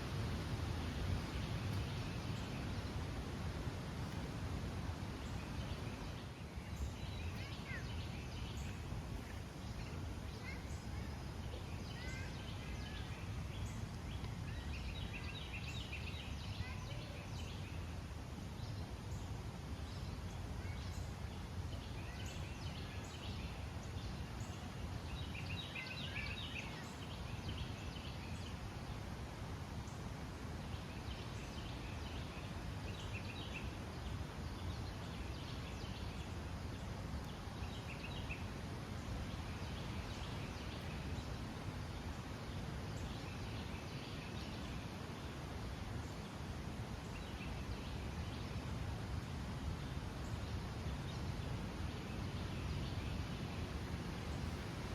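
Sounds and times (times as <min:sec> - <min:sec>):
songbirds chirping: 0:00.0 - 0:54.9.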